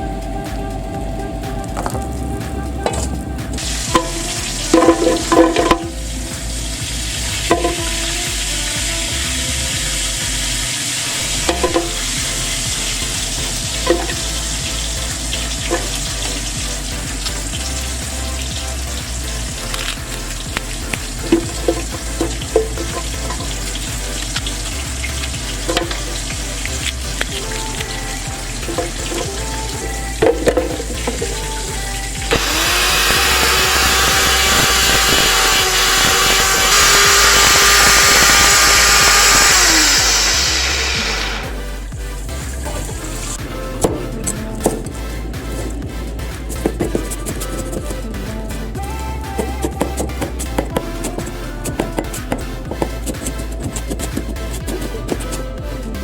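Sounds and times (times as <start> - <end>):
oil sizzling in a frying pan: 9.8 - 17.8
food sizzling in hot oil: 9.8 - 41.5.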